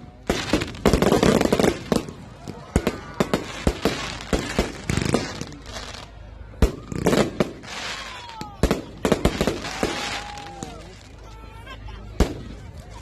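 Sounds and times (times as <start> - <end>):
fireworks bangs: 0.0 - 11.2
fireworks crackling: 0.0 - 11.2.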